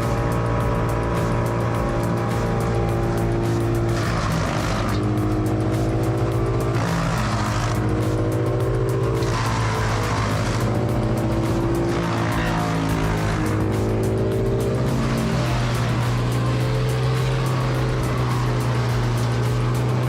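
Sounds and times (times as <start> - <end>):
electronic music with pulsing beat: 0.0 - 20.0.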